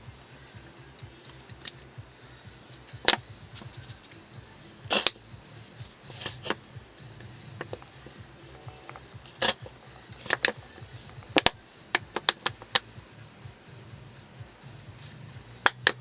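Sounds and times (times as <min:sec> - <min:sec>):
sharp clicks and knocks: 0:08.6 - 0:12.9.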